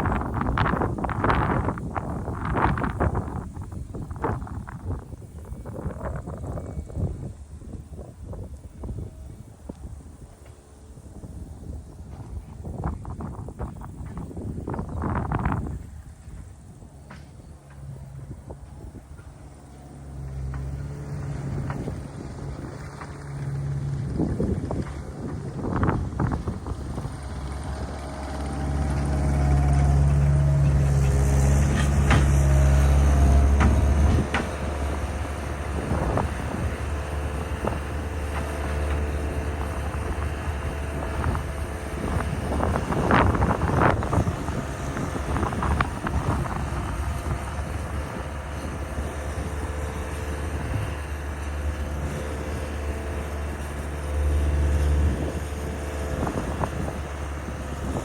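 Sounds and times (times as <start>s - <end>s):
skid steer engine running: 0.0s - 58.0s
clanks and rattles: 30.0s - 53.0s.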